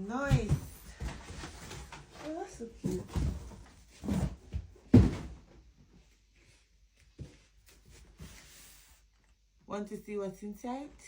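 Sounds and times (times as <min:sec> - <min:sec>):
cardboard box thump: 0:03.2 - 0:05.4.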